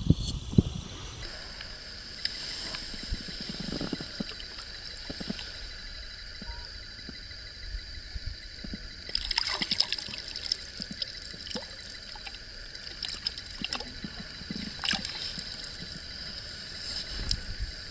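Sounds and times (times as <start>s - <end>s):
steady hiss: 0.0s - 1.2s.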